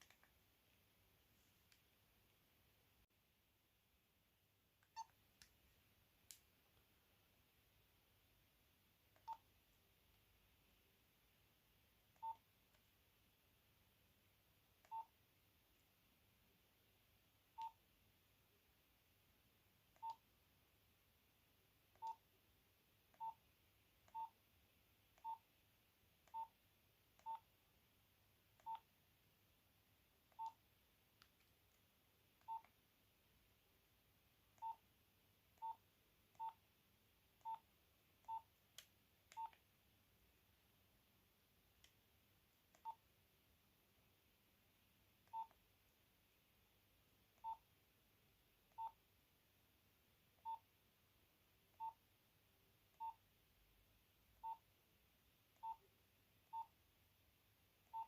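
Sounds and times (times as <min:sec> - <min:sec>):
keypad beeps: 0:04.9 - 0:05.2, 0:12.2 - 0:12.4, 0:14.9 - 0:15.1, 0:17.6 - 0:17.8, 0:20.0 - 0:20.2, 0:22.0 - 0:22.2, 0:24.1 - 0:24.4, 0:25.2 - 0:25.4, 0:26.3 - 0:26.5, 0:27.2 - 0:27.4, 0:28.6 - 0:28.9, 0:30.3 - 0:30.6, 0:32.4 - 0:32.7, 0:34.6 - 0:34.8, 0:36.4 - 0:36.6, 0:37.4 - 0:37.6, 0:38.2 - 0:38.5, 0:39.3 - 0:39.6, 0:45.3 - 0:45.6, 0:53.0 - 0:53.2, 0:54.4 - 0:54.6, 0:56.5 - 0:56.7.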